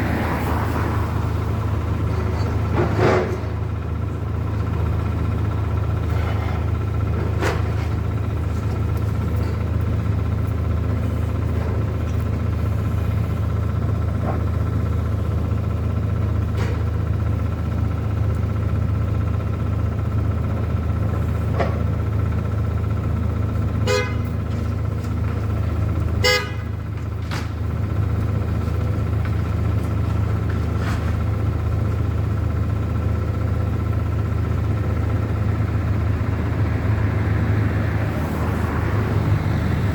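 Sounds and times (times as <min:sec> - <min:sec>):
low street rumble: 0:00.0 - 0:39.9
vehicle horn toots: 0:23.8 - 0:24.3, 0:26.2 - 0:26.7.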